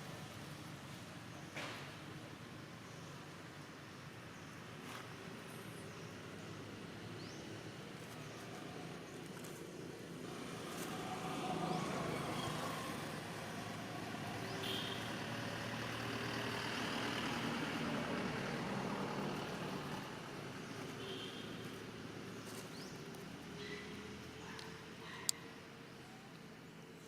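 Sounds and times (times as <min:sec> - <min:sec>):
vehicle engine passing by: 0:10.2 - 0:25.0.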